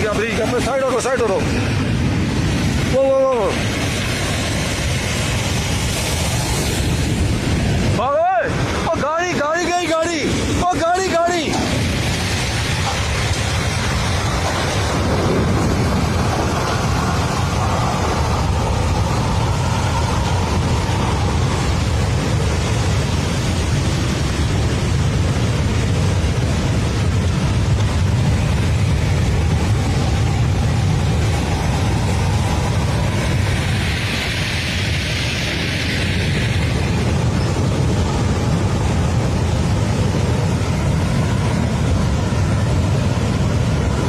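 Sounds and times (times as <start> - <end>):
stream water rushing: 0.0 - 44.0.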